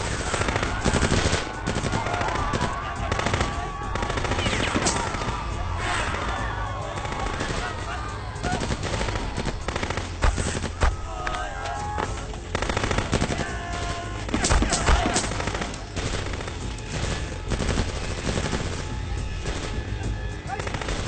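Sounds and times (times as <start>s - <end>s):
machine-gun bursts: 0.0s - 5.5s, 8.4s - 11.0s, 12.5s - 19.8s
single gunshots: 8.4s - 11.5s, 12.5s - 19.9s.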